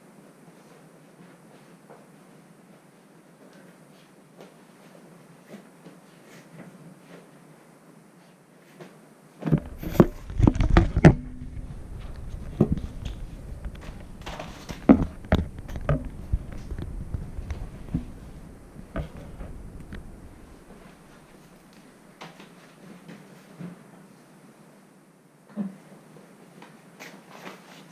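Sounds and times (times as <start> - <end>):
low rumble: 9.6 - 21.5.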